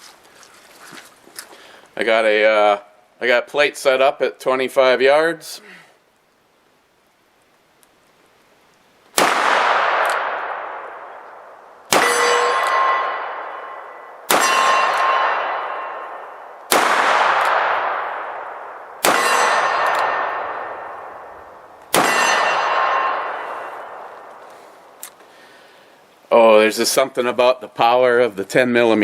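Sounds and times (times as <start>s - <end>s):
steel plate target clanging: 11.9s - 16.3s, 19.0s - 21.0s, 22.0s - 24.1s.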